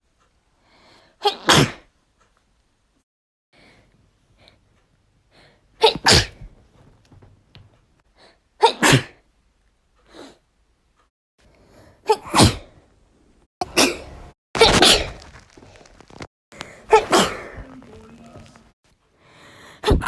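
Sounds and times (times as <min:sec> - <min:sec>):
woman sneezing: 0:05.8 - 0:06.5, 0:08.6 - 0:09.2, 0:12.1 - 0:12.7, 0:16.9 - 0:17.6.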